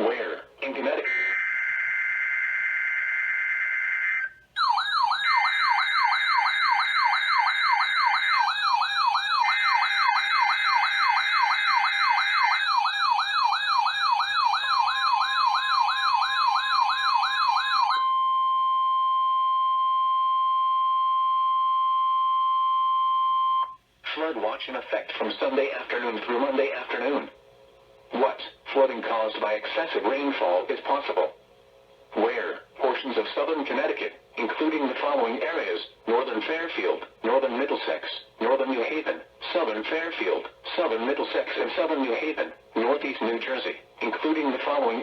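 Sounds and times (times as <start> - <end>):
steady warning tone: 0.9 - 23.8
warbling siren alarm: 1.0 - 23.8.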